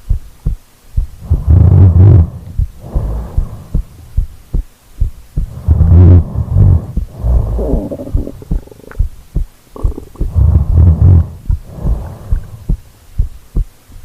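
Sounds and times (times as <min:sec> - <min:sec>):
heartbeat thumps: 0:00.0 - 0:14.0
slow heavy breathing: 0:01.2 - 0:04.3, 0:05.4 - 0:09.1, 0:09.8 - 0:13.3.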